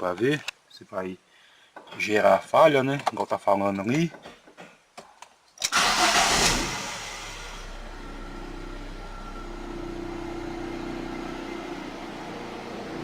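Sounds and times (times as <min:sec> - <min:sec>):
car engine revving then idling: 0:05.8 - 0:13.0.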